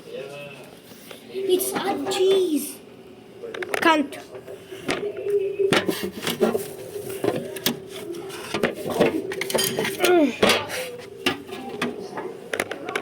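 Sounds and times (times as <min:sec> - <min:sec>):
steady low hum: 0:00.8 - 0:13.0
indistinct voices: 0:01.2 - 0:13.0
kitchen clatter: 0:05.7 - 0:13.0.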